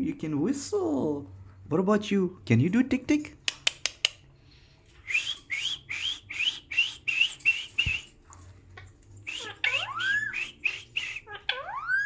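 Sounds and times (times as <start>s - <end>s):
parrot chirping: 8.8s - 12.0s
parrot whistle rising and falling: 9.3s - 12.0s.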